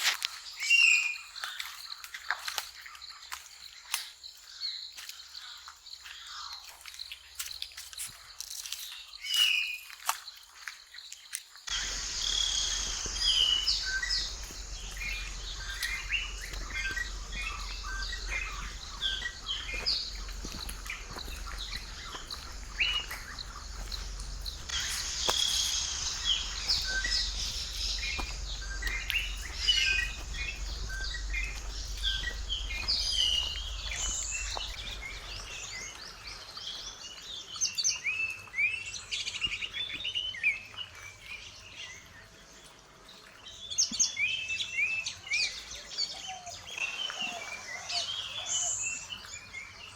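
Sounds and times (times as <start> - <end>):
forest birds calling: 0.2 - 49.9
insects hissing: 11.7 - 37.2.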